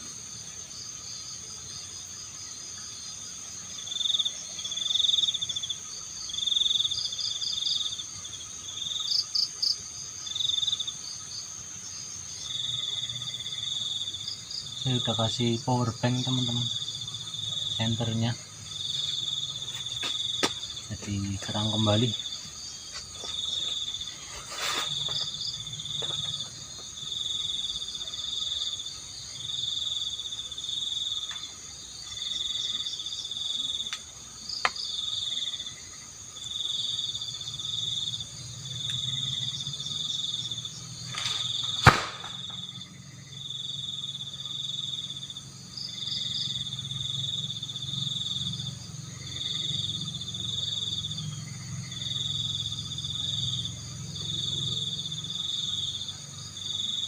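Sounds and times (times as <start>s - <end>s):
high insect hiss: 0.0s - 57.0s
insects chirping in pulses: 0.0s - 57.0s
sharp knock: 41.8s - 42.4s.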